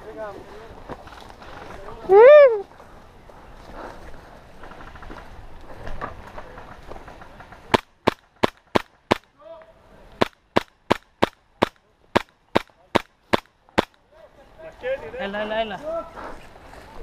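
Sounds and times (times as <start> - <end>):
airsoft gun shots: 10.2 - 14.0.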